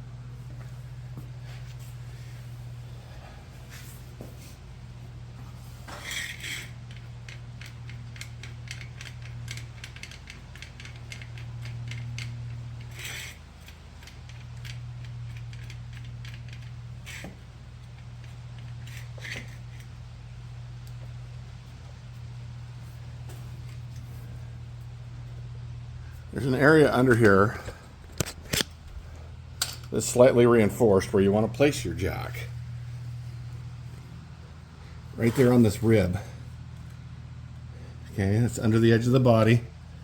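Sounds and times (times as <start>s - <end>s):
steady low hum: 0.0s - 40.0s.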